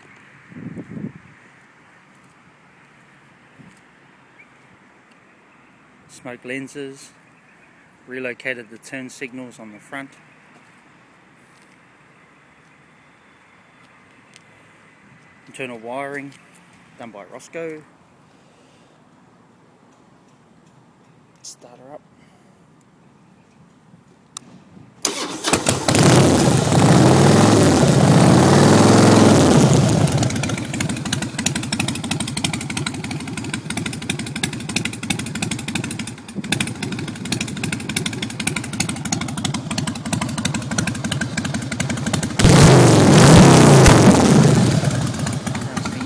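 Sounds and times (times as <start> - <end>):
motorcycle engine cranking: 25.0 - 46.0
motorcycle engine running and revving: 25.5 - 46.0.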